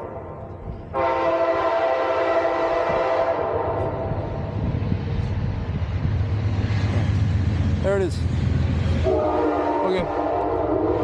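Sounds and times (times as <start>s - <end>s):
train horn: 0.0s - 4.3s, 9.0s - 11.0s
train rumbling: 0.0s - 11.0s.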